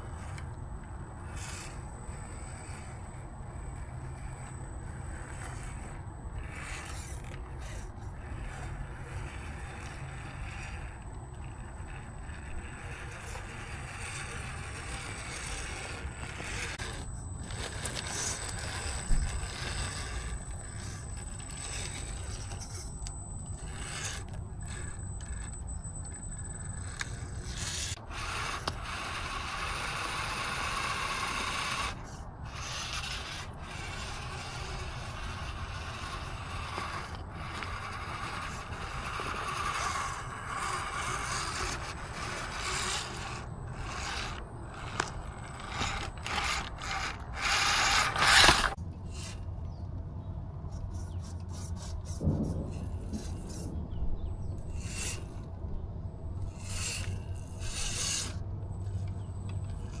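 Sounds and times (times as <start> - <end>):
electric motor and gears whining: 0.0 - 60.0
tyres and chassis scraping: 0.0 - 60.0.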